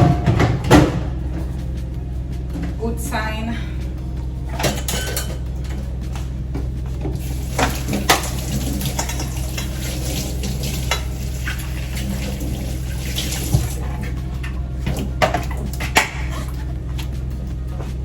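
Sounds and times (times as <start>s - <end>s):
refrigerator parts knocking and clinking: 0.0s - 1.6s, 4.4s - 9.8s, 13.5s - 18.0s
steady low hum: 0.0s - 18.0s.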